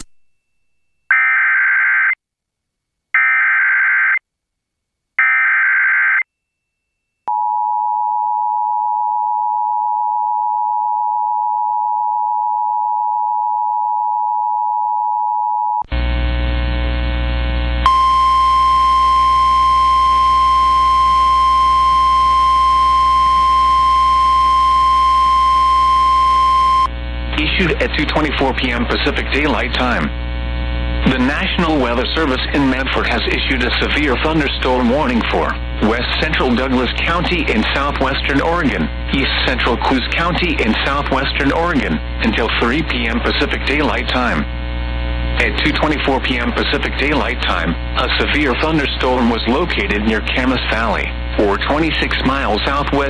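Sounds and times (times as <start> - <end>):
steady hum: 15.9 - 53.0
buzzy data bursts: 17.6 - 44.1
single warning tone: 17.8 - 26.9
two-tone attention signal: 17.9 - 26.9.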